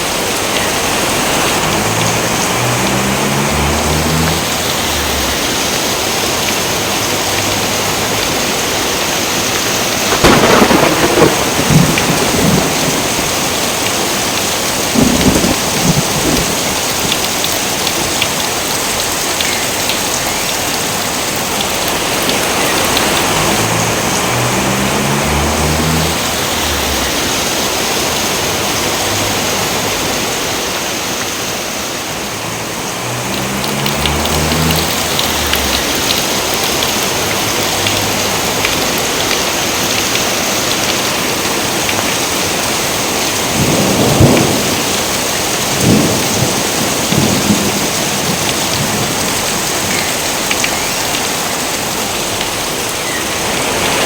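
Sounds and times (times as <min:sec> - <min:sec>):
heavy rain: 0:00.0 - 0:54.0
thunder clap: 0:10.0 - 0:17.5, 0:43.4 - 0:50.0.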